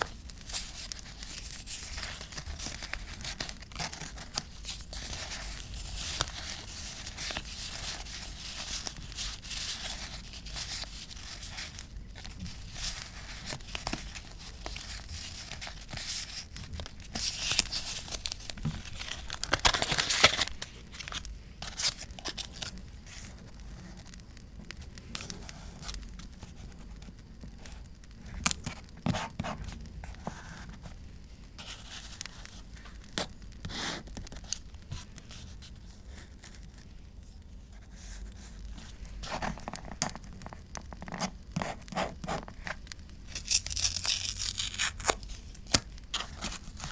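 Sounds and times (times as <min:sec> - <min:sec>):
paper tearing and rustling: 0:00.0 - 0:23.2, 0:43.3 - 0:46.9.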